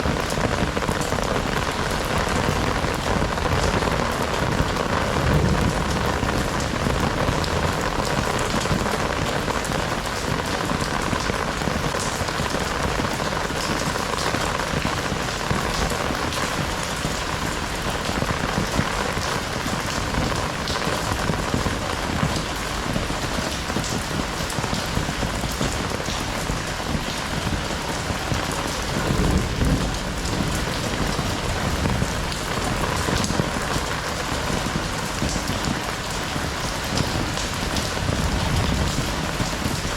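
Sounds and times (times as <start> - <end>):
heavy rain falling: 0.0 - 39.9
low rumble: 5.0 - 8.4.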